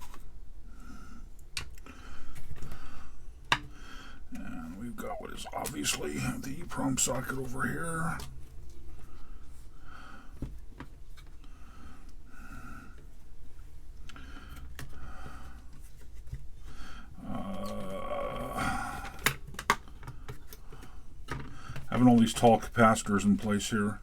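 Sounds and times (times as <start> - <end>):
clicks and taps of tools: 3.5 - 3.7
noisy stretch: 16.7 - 19.4.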